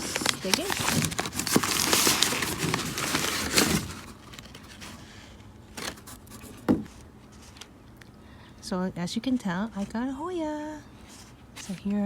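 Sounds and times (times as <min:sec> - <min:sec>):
packaging rustling and crinkling: 0:00.0 - 0:07.8.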